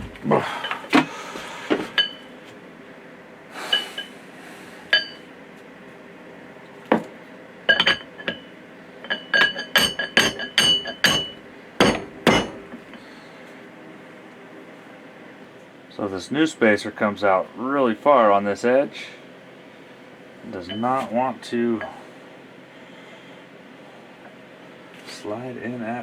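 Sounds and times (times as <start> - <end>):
metal taps with ringing note: 2.0 - 2.2, 4.9 - 5.2, 7.7 - 12.9, 20.7 - 21.0.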